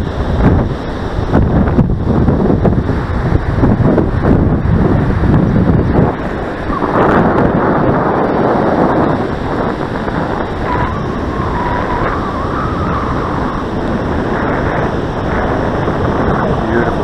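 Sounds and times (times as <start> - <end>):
surf: 0.0 - 17.0
wind buffeting microphone: 0.0 - 17.0
faint wavering whine: 5.7 - 17.0.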